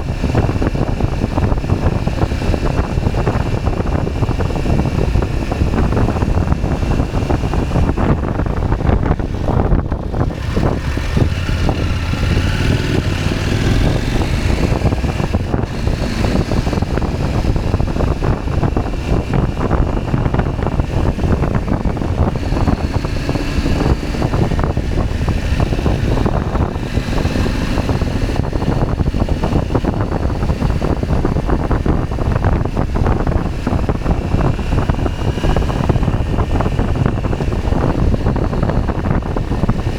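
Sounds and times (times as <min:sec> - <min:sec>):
motorcycle engine running: 0:00.0 - 0:39.9
wind rushing over microphone: 0:00.0 - 0:39.9.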